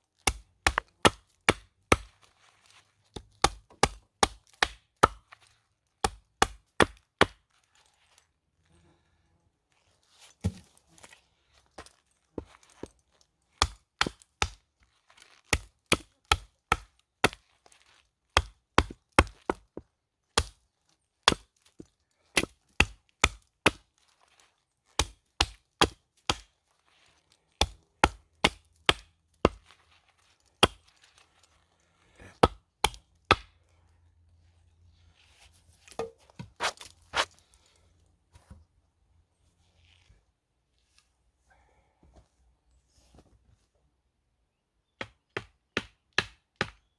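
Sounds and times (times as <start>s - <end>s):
soft rustling and crunching: 0.0s - 3.8s, 7.4s - 28.0s, 28.8s - 43.9s
hatchet chopping wood: 0.2s - 2.2s, 3.2s - 5.4s, 6.0s - 7.4s, 10.4s - 10.7s, 13.6s - 14.6s, 15.5s - 17.5s, 18.4s - 19.8s, 20.4s - 20.6s, 21.2s - 23.9s, 25.0s - 26.5s, 27.6s - 29.8s, 30.6s - 31.0s, 32.3s - 33.6s, 35.9s - 37.3s, 45.0s - 46.9s.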